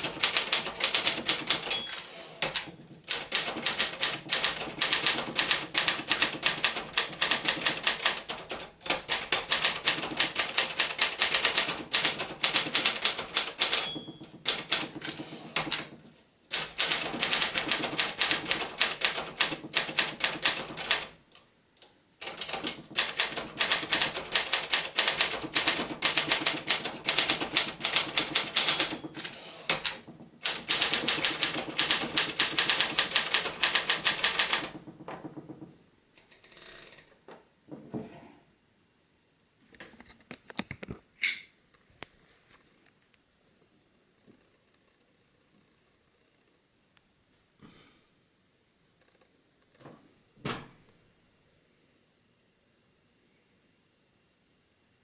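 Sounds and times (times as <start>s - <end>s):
typewriter typing: 0.0s - 21.2s, 22.2s - 35.4s
typewriter bell ringing: 1.2s - 3.3s, 13.4s - 15.1s, 28.4s - 30.0s.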